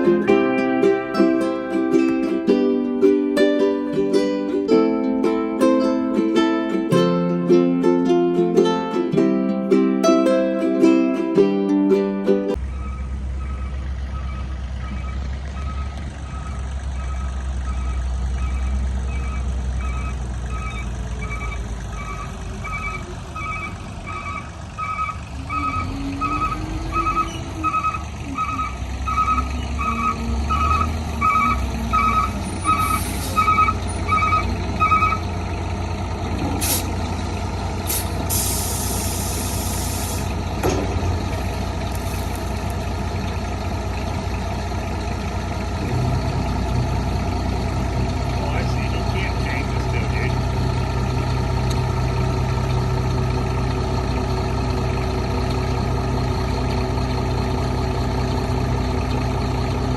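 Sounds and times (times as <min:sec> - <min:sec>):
heavy truck engine running: 0:00.0 - 0:59.9
backup alarm beeping: 0:12.7 - 0:35.2
air hiss: 0:36.6 - 0:36.9, 0:37.9 - 0:40.3
sharp clunks: 0:40.6 - 0:41.2.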